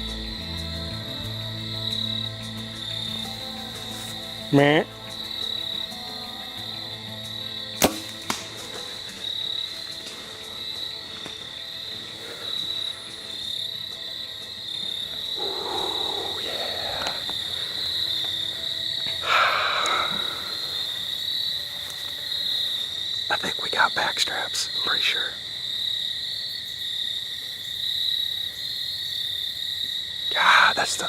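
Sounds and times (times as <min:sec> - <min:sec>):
crickets chirring: 0:00.0 - 0:31.0
bow shot snap: 0:07.8 - 0:09.1.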